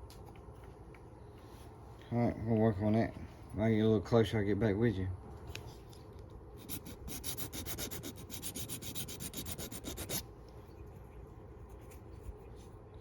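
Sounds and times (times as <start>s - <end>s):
file rasping on metal: 6.7s - 10.2s.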